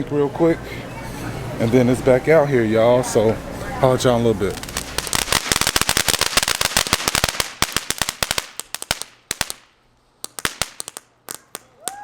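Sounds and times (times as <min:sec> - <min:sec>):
firecrackers popping: 0:04.4 - 0:12.0.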